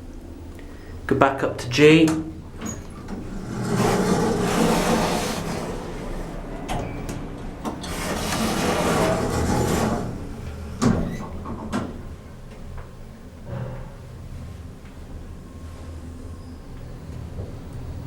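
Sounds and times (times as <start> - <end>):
lift doors sliding shut: 1.9 - 14.0
lift low hum: 2.3 - 13.4.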